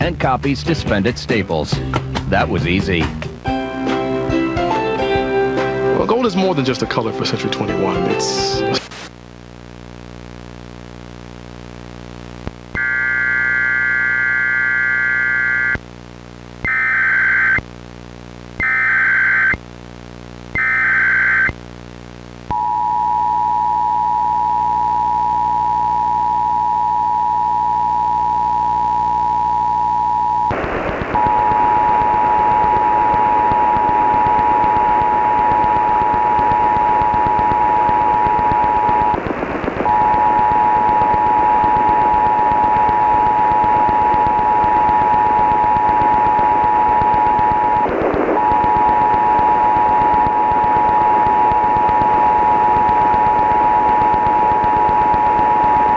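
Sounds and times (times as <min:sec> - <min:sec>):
loud static: 0:00.0 - 0:55.9
shrill digital data tones: 0:20.6 - 0:21.6.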